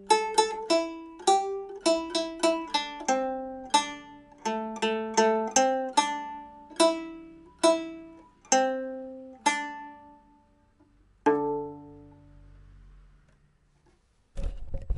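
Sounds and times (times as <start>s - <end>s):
plucked pipa notes: 0.0s - 13.3s.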